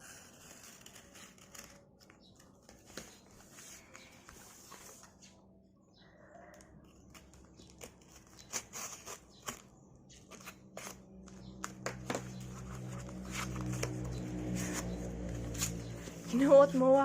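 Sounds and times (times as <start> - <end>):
low hum: 11.3 - 17.0.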